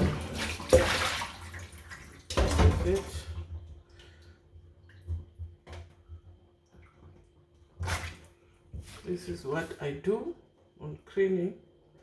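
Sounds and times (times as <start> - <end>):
water splashing and dripping: 0.0 - 3.3
faint steady hum: 0.0 - 12.0.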